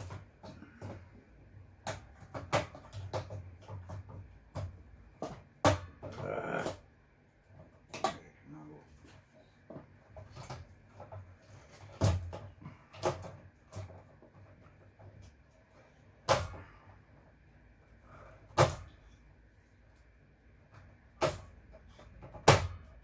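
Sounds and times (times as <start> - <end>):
loud knocks of tools and parts: 9.7 - 14.4.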